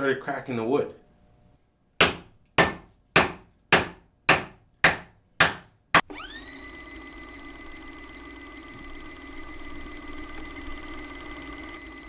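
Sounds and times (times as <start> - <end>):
knife batoned into wood: 2.0 - 5.6.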